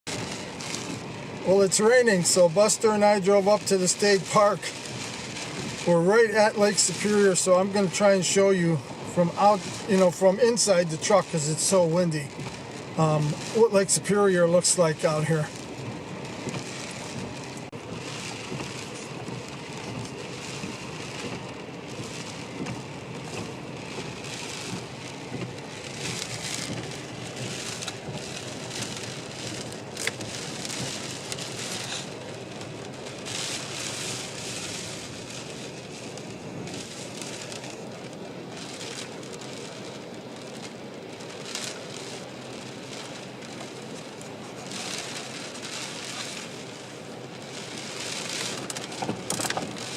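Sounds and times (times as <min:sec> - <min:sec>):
rain and wind against truck: 0:00.0 - 0:49.9.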